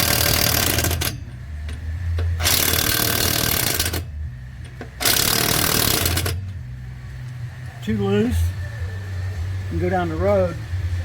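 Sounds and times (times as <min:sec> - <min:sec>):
impact wrench hammering: 0:00.0 - 0:06.5
low hum: 0:00.0 - 0:11.0.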